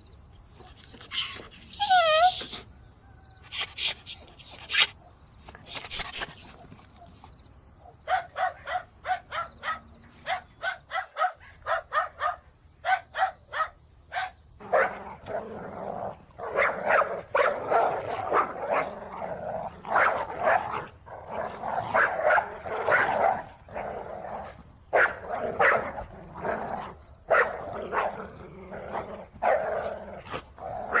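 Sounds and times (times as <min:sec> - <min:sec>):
dog barking: 0:07.9 - 0:15.1, 0:16.4 - 0:19.0, 0:19.9 - 0:20.8, 0:21.9 - 0:23.4, 0:24.9 - 0:26.0, 0:27.3 - 0:28.2.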